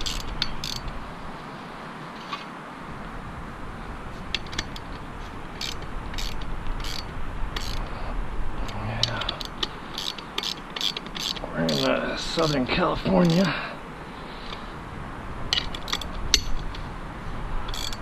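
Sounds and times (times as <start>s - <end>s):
steady hiss: 0.0s - 18.0s
light clicks and knocks of tools: 4.3s - 5.0s, 5.6s - 7.9s, 8.6s - 13.6s, 15.5s - 16.9s, 17.7s - 18.0s.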